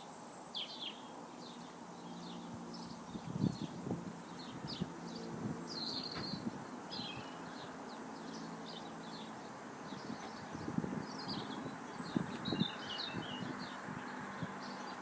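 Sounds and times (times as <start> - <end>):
small birds chirping: 0.0 - 15.0
soft handling knocks: 6.1 - 6.5.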